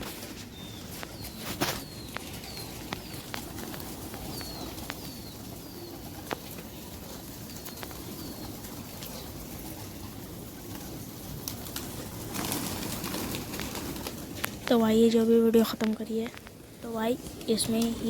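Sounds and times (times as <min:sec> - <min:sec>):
pigeons cooing: 0:00.1 - 0:15.1
high bird chirps: 0:00.5 - 0:06.8.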